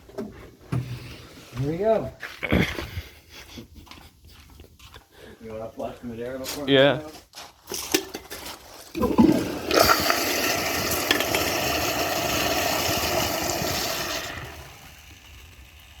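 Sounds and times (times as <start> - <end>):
toilet flush clunk: 9.0 - 16.0
toilet water rushing: 9.0 - 16.0.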